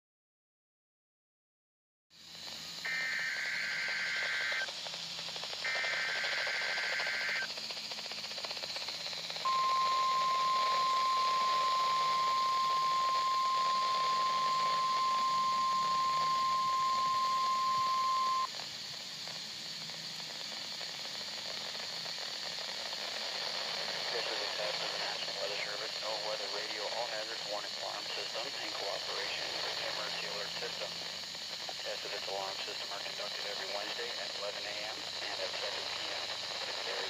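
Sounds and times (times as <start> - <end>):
receiver hiss: 2.2 - 37.0
steady warning alarm tone: 2.9 - 4.7, 5.6 - 7.5, 9.4 - 18.5
screeching digital header burst: 9.5 - 18.5.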